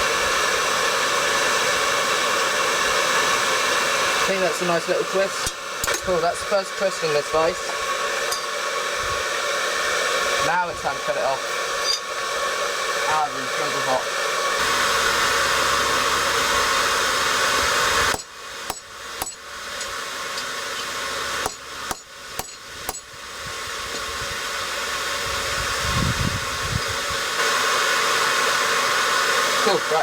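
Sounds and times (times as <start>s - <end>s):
forge blower roaring: 0.0s - 30.0s
hammer striking hot steel: 4.5s - 8.7s, 11.5s - 12.2s, 18.0s - 23.1s.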